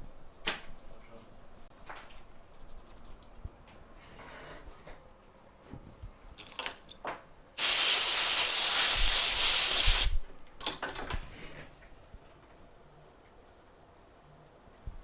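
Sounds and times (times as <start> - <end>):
aerosol can spraying: 7.6 - 10.2.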